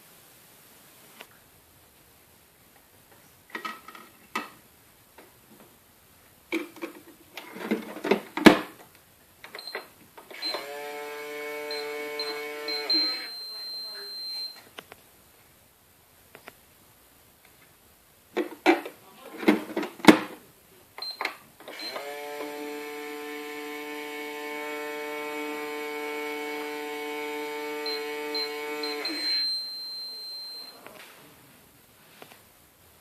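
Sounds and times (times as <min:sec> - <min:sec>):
furnace humming: 0:00.0 - 0:33.0
furnace knocks and clicks: 0:06.5 - 0:08.8, 0:18.4 - 0:20.4
thin high whine: 0:10.4 - 0:14.7, 0:24.7 - 0:31.6.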